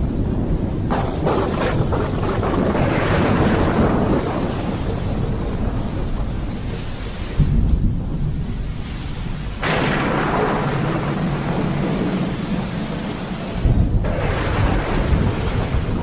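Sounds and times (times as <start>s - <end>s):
rain: 0.0s - 16.0s
thunder rumbling: 0.0s - 16.0s
loud thunder crash: 0.1s - 16.0s.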